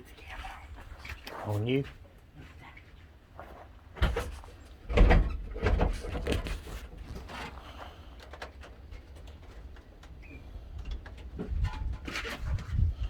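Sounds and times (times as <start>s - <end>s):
rustling: 5.4s - 9.7s.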